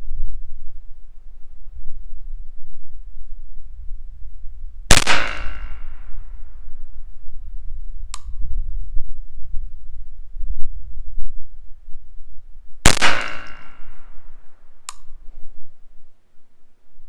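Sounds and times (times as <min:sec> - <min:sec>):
rifle shot with echo: 0:04.9 - 0:06.5, 0:12.9 - 0:14.8
faint sharp click: 0:08.1 - 0:08.4, 0:14.9 - 0:15.2.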